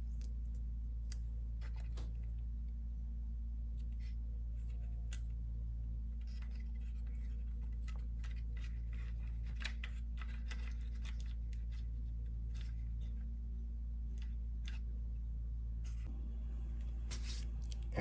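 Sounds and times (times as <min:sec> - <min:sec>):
small parts clicking and scratching: 0:00.0 - 0:02.4, 0:03.8 - 0:05.5, 0:06.2 - 0:13.3, 0:14.1 - 0:16.1
steady low hum: 0:00.0 - 0:18.0.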